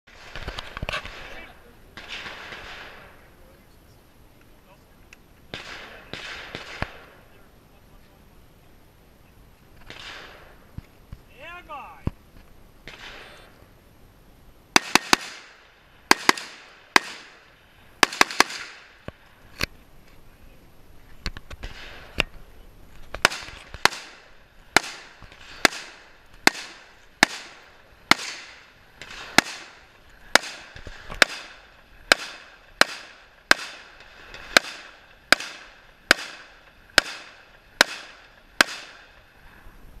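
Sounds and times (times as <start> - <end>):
rifle shots with echo: 0.1 - 3.3, 5.5 - 7.3, 9.8 - 10.7, 12.8 - 13.5, 14.7 - 19.1, 21.6 - 22.3, 23.1 - 39.3.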